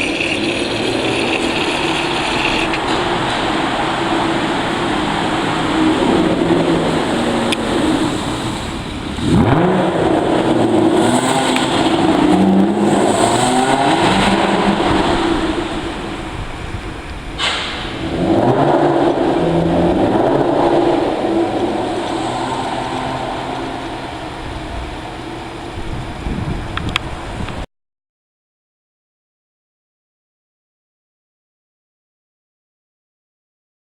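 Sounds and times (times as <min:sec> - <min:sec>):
car engine revving loudly: 0:00.0 - 0:27.6
short sharp crack: 0:17.4 - 0:18.0.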